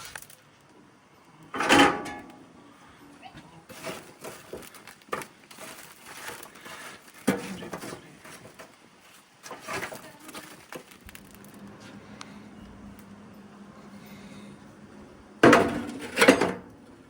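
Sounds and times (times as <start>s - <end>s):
handling knocks and rustles: 3.4s - 12.0s
steady low hum: 11.0s - 17.0s.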